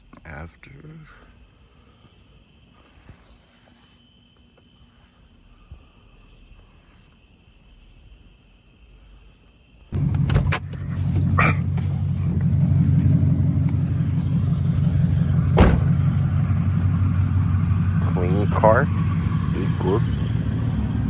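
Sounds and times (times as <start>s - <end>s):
car engine running: 9.9s - 21.0s.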